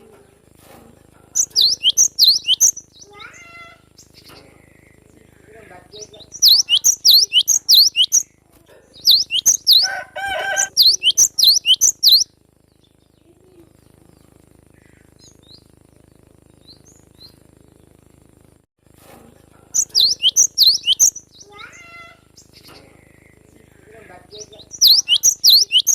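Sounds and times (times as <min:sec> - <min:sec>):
bird chirping: 0:01.4 - 0:18.0, 0:19.8 - 0:21.7, 0:24.3 - 0:25.9
harsh low bird call: 0:09.1 - 0:12.2, 0:24.7 - 0:25.9.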